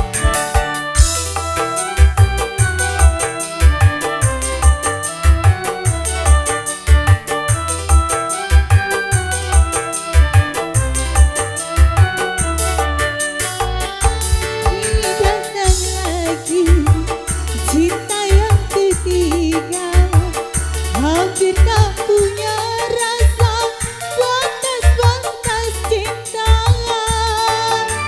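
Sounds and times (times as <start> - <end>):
drum and bass beat: 0.0 - 28.0
live keyboard band music: 0.0 - 28.0
wavering lead melody: 0.0 - 28.0.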